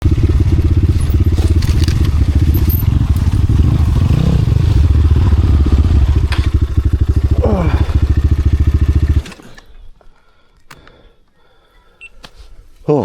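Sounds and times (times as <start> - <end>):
motorcycle engine running: 0.0 - 9.4.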